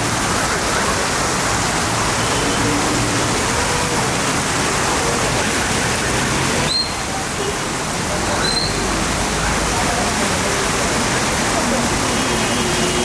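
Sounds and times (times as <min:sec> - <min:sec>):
rush of runoff water: 0:00.0 - 0:13.0.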